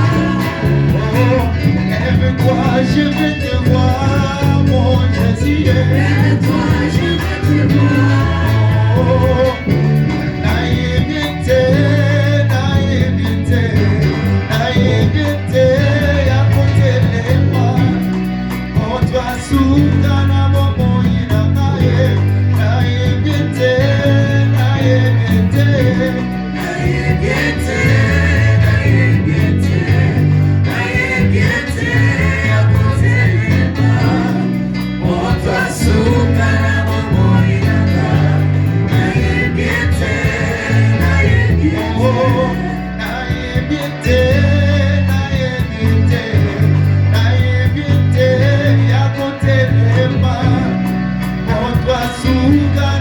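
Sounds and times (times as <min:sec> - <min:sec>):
choir singing: 0:00.0 - 0:12.4, 0:25.2 - 0:44.8
band with bass line: 0:00.0 - 0:53.0.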